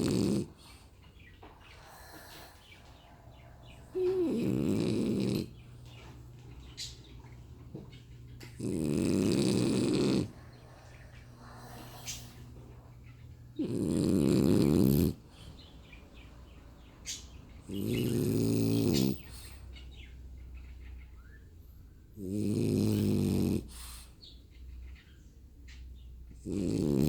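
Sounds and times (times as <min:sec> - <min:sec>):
dog snoring: 0:00.0 - 0:00.9, 0:01.8 - 0:06.9, 0:08.3 - 0:15.6, 0:17.6 - 0:19.6, 0:22.1 - 0:24.1, 0:26.3 - 0:27.0
dog breathing: 0:00.0 - 0:20.5, 0:21.6 - 0:24.6, 0:26.3 - 0:27.0.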